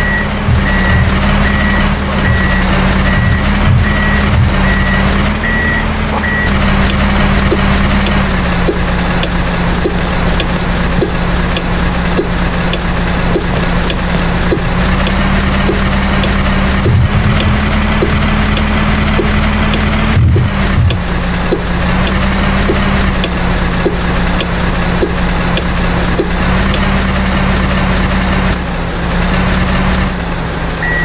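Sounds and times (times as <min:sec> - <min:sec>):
reversing alarm beeping: 0:00.0 - 0:07.7
heavy diesel engine running: 0:00.0 - 0:31.0.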